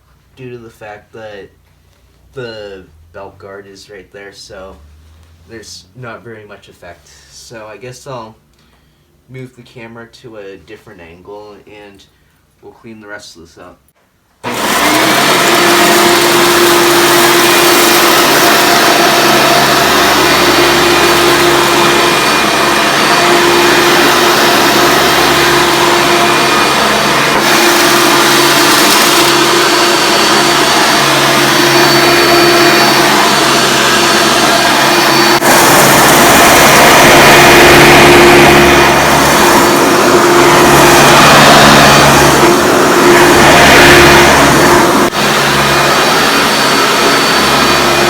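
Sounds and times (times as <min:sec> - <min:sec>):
vacuum cleaner motor humming: 0:14.4 - 0:48.0.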